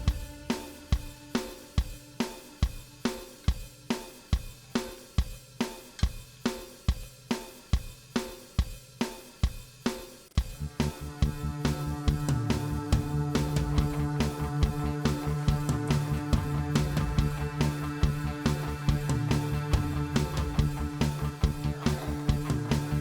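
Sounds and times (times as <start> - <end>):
drum beat with cymbals: 0.0 - 23.0
bass and guitar: 10.6 - 23.0.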